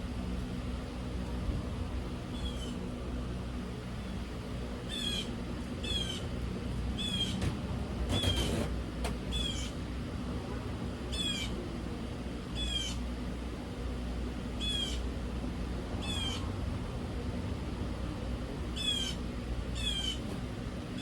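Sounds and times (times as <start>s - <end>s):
low steady hum: 0.0s - 21.0s
bird squeaky call: 4.9s - 6.2s, 7.0s - 7.4s.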